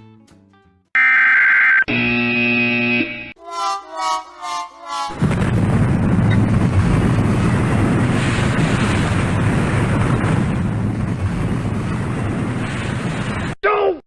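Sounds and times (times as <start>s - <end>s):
wind buffeting microphone: 5.1s - 13.6s.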